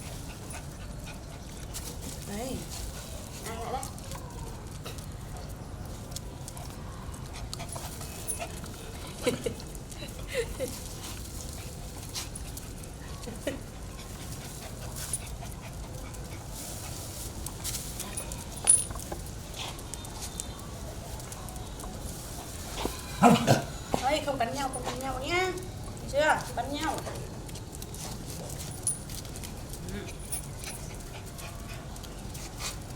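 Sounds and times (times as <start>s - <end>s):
dogs eating: 0.0s - 32.9s.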